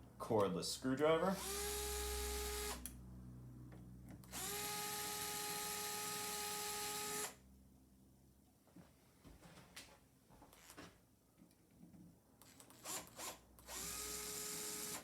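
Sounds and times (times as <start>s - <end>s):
cordless screwdriver motor whining: 1.4s - 2.9s, 4.2s - 7.4s, 12.4s - 15.0s.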